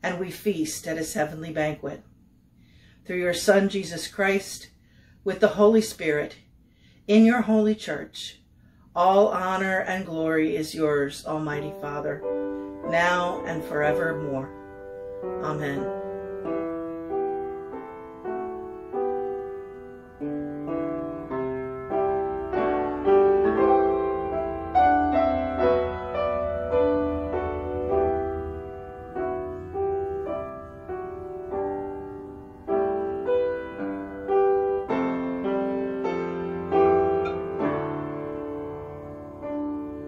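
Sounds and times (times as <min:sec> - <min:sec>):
slow solo piano: 0:14.5 - 0:40.0.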